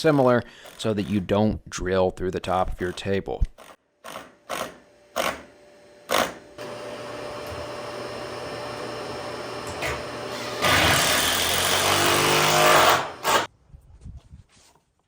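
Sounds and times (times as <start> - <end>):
electric drill straining: 6.1 - 13.5.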